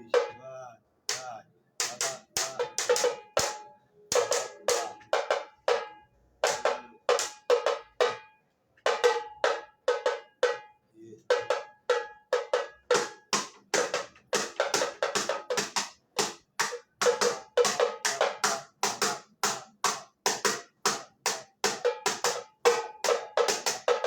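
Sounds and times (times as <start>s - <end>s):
tamborim struck with a stick: 1.1s - 8.3s.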